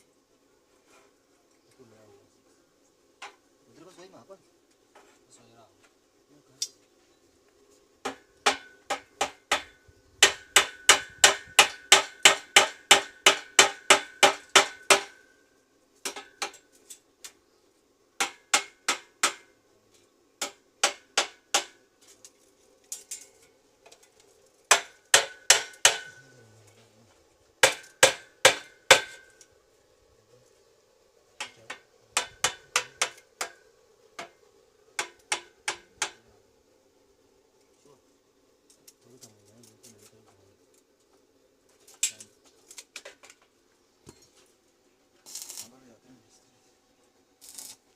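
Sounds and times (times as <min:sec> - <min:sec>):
faint steady hum: 0:00.0 - 0:47.9
hammer striking metal: 0:08.1 - 0:15.2, 0:24.7 - 0:26.3, 0:27.6 - 0:29.3, 0:31.4 - 0:33.6.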